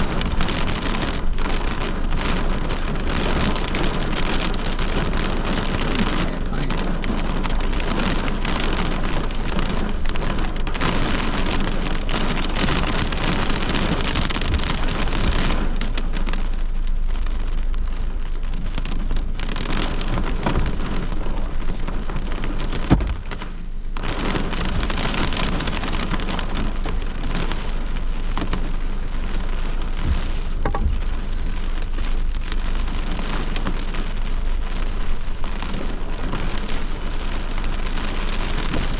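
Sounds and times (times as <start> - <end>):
heavy rain pouring: 0.0 - 38.9
thunder crack: 0.0 - 38.9.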